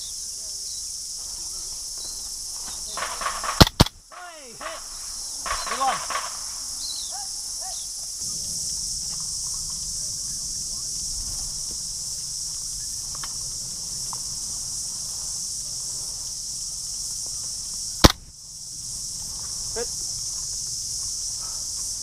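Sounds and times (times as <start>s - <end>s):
insects chirring: 0.0s - 22.0s
sharp loud crack: 3.0s - 4.0s.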